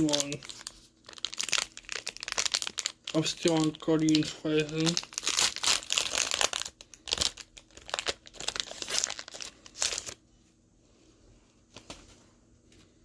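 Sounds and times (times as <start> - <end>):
foil wrapper crinkling and tearing: 0.0 - 10.2.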